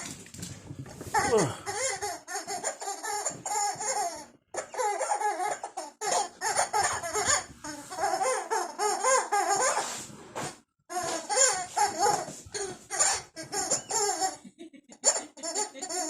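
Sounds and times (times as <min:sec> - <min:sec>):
dog toy playing recorded laughter: 0:10.9 - 0:16.0.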